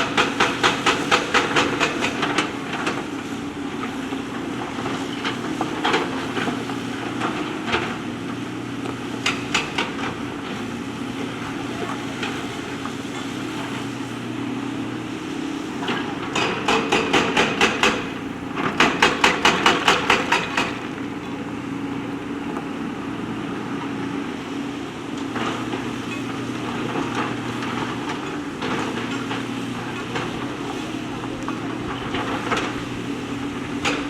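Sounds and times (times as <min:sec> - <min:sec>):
diesel engine running: 0:00.0 - 0:34.0
rapid metallic knocking: 0:16.6 - 0:18.1, 0:18.7 - 0:20.8.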